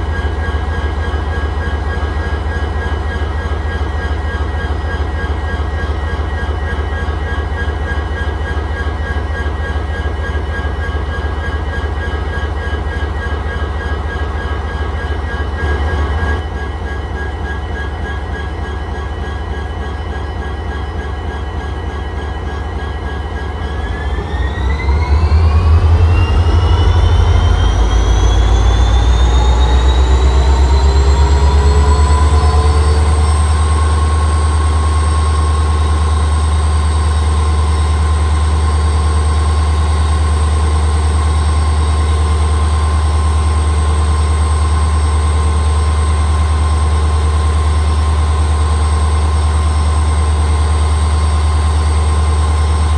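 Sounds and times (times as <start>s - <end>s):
locomotive diesel engine drone: 0.0s - 52.9s
high turbine-like whine: 14.4s - 18.0s, 19.8s - 52.9s.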